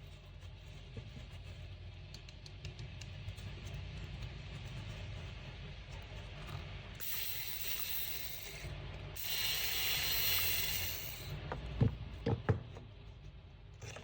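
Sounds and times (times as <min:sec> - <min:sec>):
tool ratcheting on metal: 0:07.0 - 0:11.4.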